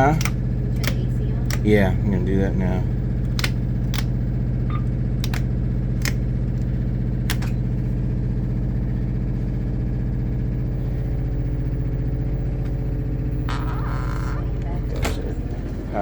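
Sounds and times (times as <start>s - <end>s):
breaker switch clicks: 0.0s - 2.0s, 3.2s - 7.7s
generator humming: 0.0s - 16.0s.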